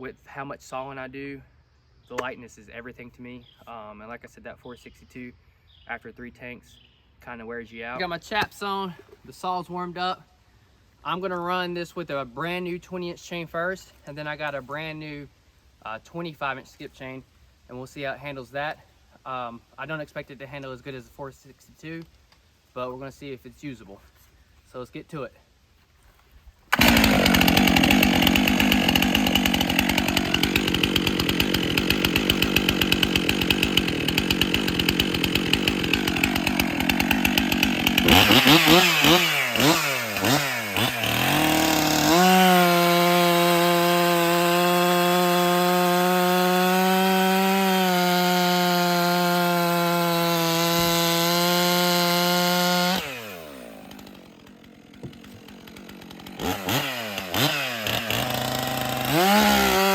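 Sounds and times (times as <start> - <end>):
chainsaw cutting through log: 26.7 - 59.9.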